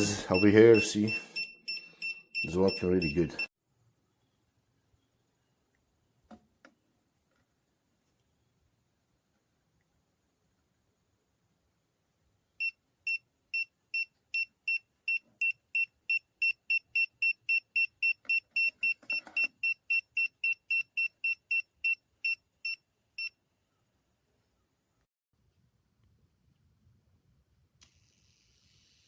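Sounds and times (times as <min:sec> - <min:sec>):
high-pitched alarm beeps: 0:00.0 - 0:03.5, 0:13.1 - 0:22.4.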